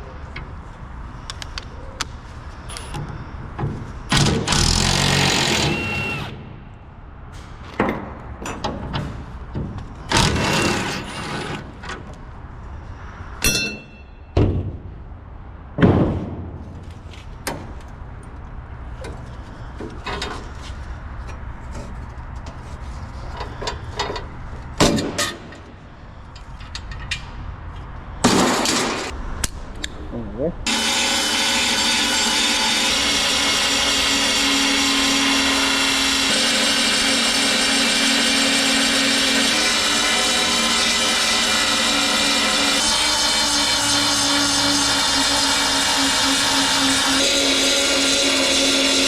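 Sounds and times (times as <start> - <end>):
power tool bursts: 4.1 - 6.4, 30.7 - 49.0.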